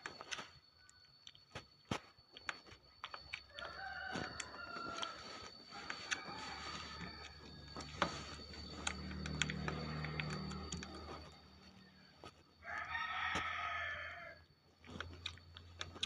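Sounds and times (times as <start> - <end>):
rooster crowing: 3.4 - 14.5.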